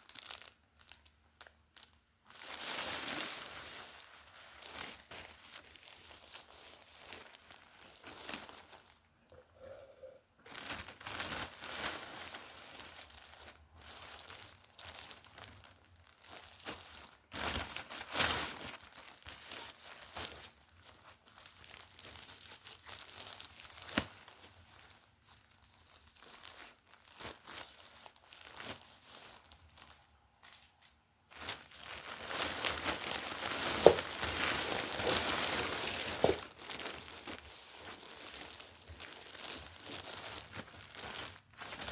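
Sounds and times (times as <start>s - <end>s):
plastic packaging crinkling: 0.0s - 9.1s, 10.4s - 41.9s
packaging tearing: 31.4s - 41.9s.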